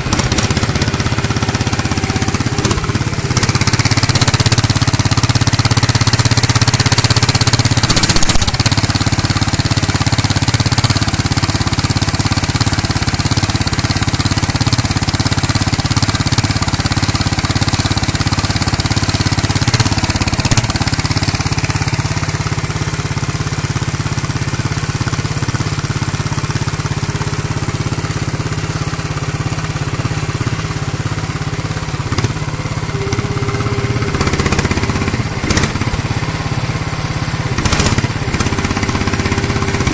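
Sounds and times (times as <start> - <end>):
high even whine: 0.0 - 5.2, 31.1 - 39.9
model excavator machine drone: 0.0 - 10.5, 29.8 - 39.9.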